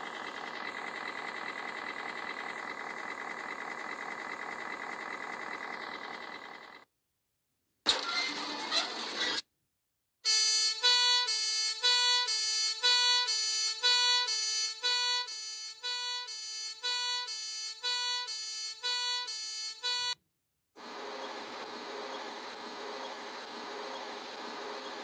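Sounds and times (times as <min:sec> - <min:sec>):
two-tone electronic siren: 0:10.2 - 0:20.2.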